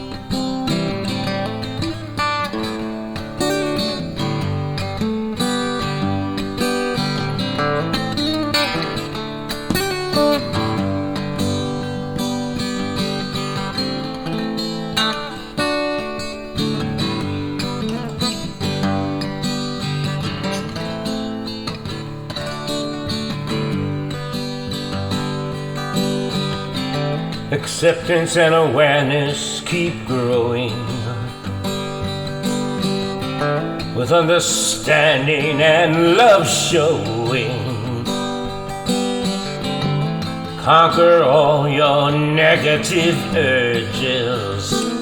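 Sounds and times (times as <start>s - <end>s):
acoustic guitar strummed and picked: 0.0s - 45.0s.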